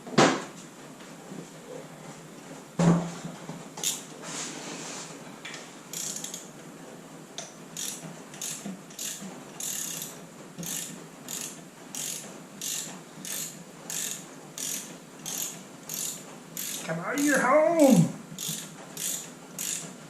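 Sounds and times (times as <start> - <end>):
ratchet wrench clicking: 5.9 - 6.4, 7.8 - 16.8, 18.4 - 19.9.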